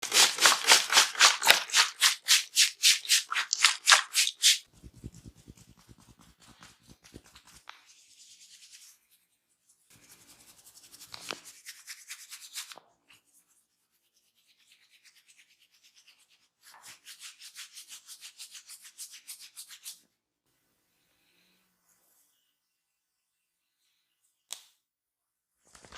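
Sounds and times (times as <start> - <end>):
hands rubbing skin: 0.0 - 9.0.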